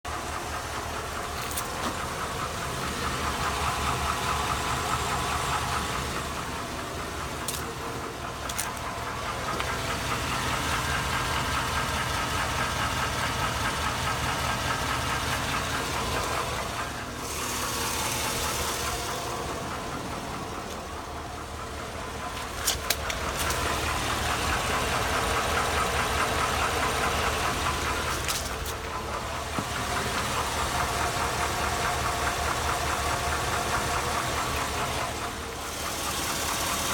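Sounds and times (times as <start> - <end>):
engine running with knocking tick: 0.0 - 36.9
sharp engine clicks: 0.4 - 36.9.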